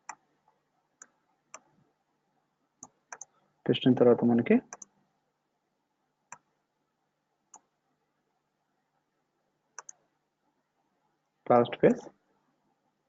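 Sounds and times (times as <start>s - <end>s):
faint computer clicks: 2.8s - 3.3s, 4.7s - 5.0s, 9.8s - 10.0s.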